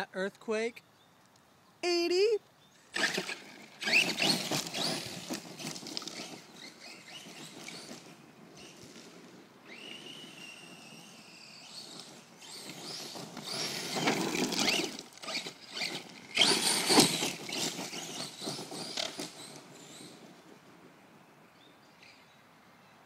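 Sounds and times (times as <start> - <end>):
tires churning dirt: 2.8 - 21.7
rc truck motor whine: 2.9 - 20.8.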